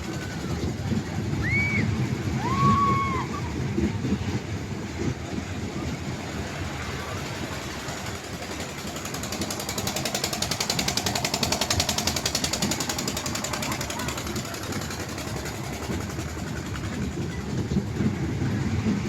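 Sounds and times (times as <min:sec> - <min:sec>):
toy train rattling: 0:06.6 - 0:18.0.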